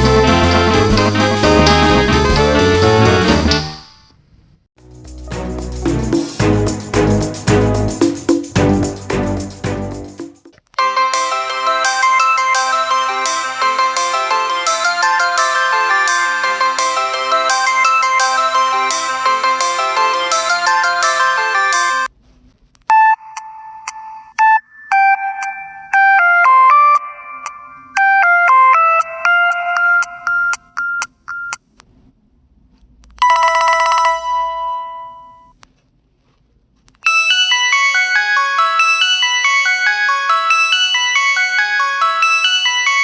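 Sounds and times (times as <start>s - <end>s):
electronic phone ringtones: 22.9s - 31.6s, 33.2s - 35.6s, 37.0s - 43.0s.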